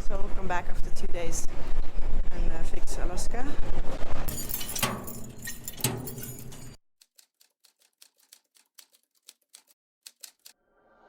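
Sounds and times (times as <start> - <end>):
rapid typewriter-like clicks: 4.4 - 10.5.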